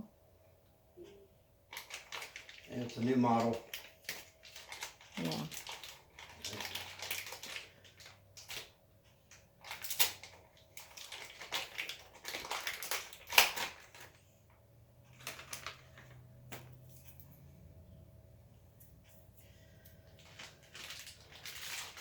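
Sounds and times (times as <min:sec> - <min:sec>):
packaging crinkling: 0:01.7 - 0:14.2, 0:15.1 - 0:16.9, 0:20.0 - 0:22.0
low hum: 0:14.4 - 0:20.8.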